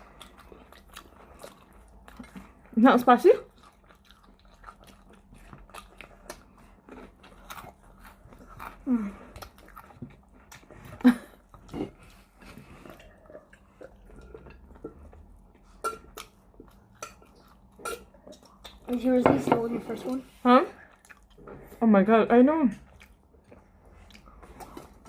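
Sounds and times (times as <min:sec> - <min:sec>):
people chewing crispy chicken: 0:00.0 - 0:19.2, 0:20.0 - 0:21.8, 0:22.8 - 0:25.0.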